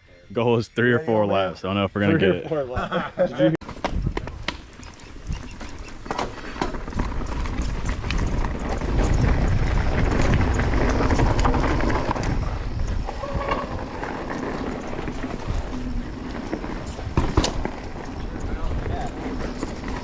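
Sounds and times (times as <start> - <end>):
bike clicks and rattles: 3.6 - 20.0
tyre rumble on rocky trail: 3.6 - 20.0
wind on microphone: 6.6 - 20.0.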